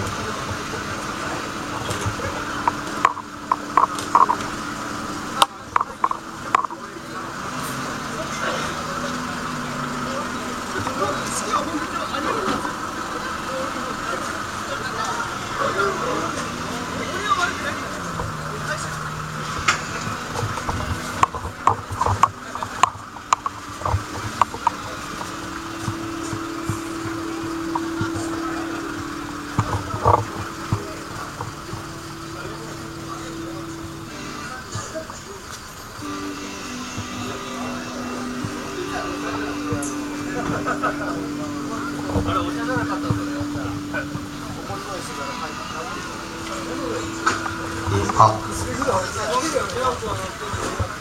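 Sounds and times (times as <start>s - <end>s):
low steady hum: 17.8s - 34.9s.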